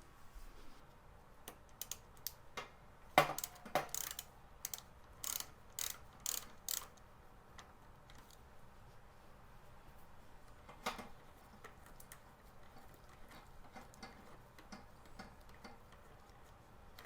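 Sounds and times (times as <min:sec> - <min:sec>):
hand ratchet clicking: 0:01.5 - 0:02.4, 0:03.3 - 0:07.0.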